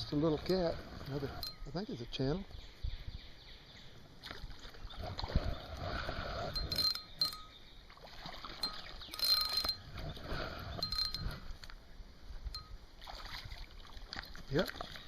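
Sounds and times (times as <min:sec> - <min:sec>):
light metallic clinks: 0:01.2 - 0:01.8, 0:06.6 - 0:07.6, 0:08.6 - 0:09.9, 0:10.8 - 0:11.4.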